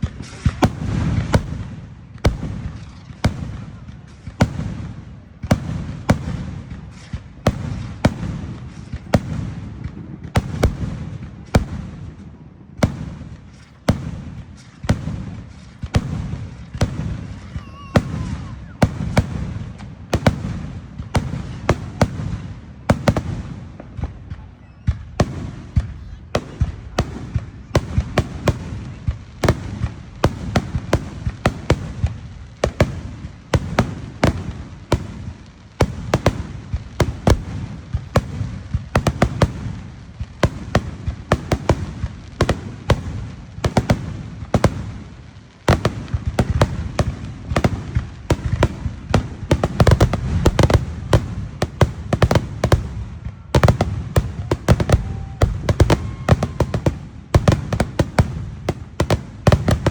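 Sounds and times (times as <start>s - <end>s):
fireworks bangs and cracks: 0.0s - 59.9s.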